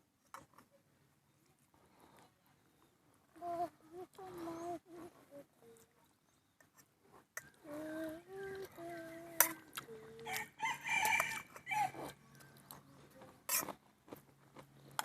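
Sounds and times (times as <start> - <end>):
rooster crowing: 10.2 - 12.2.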